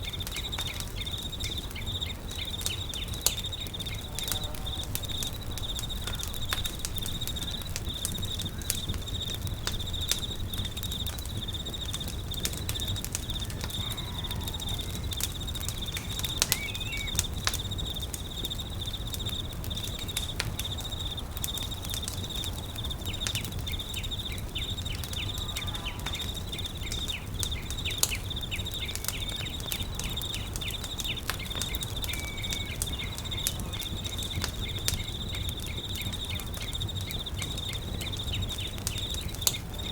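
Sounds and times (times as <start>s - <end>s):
campfire crackling and popping: 0.0s - 39.9s
insects trilling: 0.0s - 39.9s
short bird calls: 16.0s - 17.2s.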